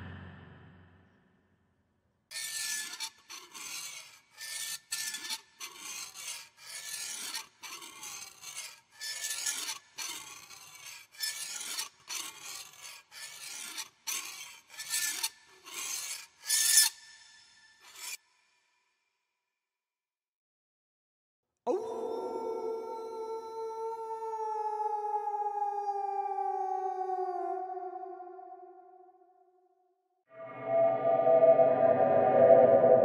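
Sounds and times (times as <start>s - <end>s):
rasping scraping strokes: 2.3s - 18.3s.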